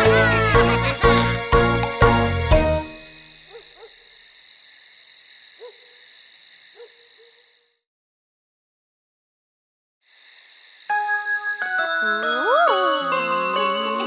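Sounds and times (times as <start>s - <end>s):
crickets trilling: 2.8s - 7.8s, 10.0s - 12.1s
owl hooting: 3.1s - 4.6s, 5.6s - 7.5s.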